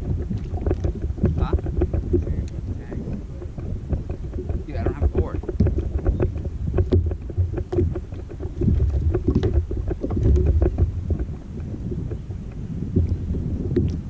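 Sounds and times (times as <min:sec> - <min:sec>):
wind on microphone: 0:00.0 - 0:14.0
small irregular knocks and clicks: 0:00.2 - 0:02.6, 0:03.4 - 0:11.4.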